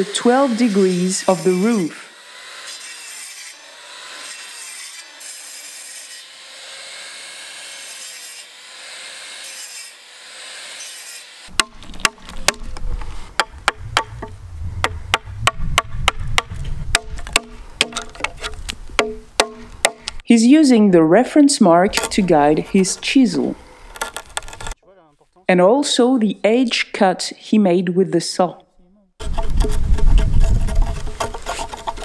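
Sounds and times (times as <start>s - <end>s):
saw rasping through wood: 0.0s - 20.2s, 29.2s - 32.0s
sharp knocks: 11.5s - 12.8s, 13.4s - 20.2s.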